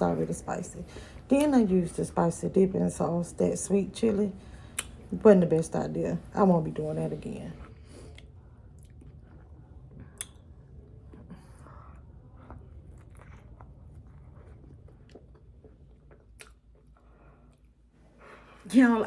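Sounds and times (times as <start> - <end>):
wet mouth clicks and smacks: 4.7 - 5.0, 10.2 - 10.4, 16.1 - 17.0
person chewing close to microphone: 7.6 - 17.9.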